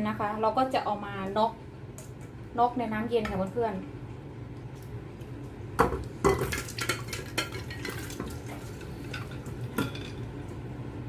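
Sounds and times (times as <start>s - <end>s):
scraping and stirring: 6.3s - 10.3s.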